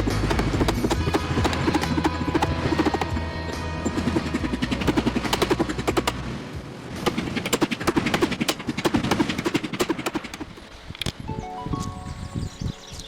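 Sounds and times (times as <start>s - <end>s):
rapid sharp knocks: 0.0s - 6.2s, 7.0s - 10.7s
steady low hum: 0.0s - 10.9s.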